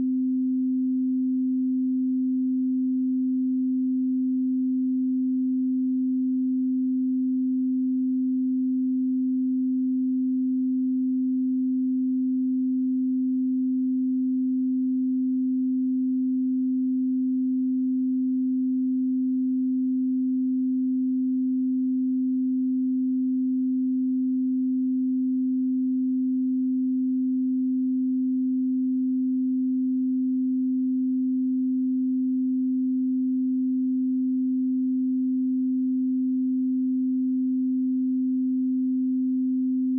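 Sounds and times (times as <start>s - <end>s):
pure sine-wave test tone: 0.0s - 39.9s.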